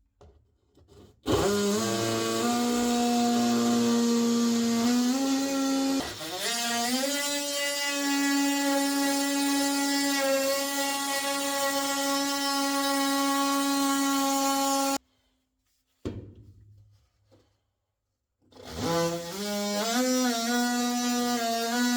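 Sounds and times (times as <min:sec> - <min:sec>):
oscillating multi-tool cutting wood: 0:01.3 - 0:15.0, 0:18.6 - 0:21.9.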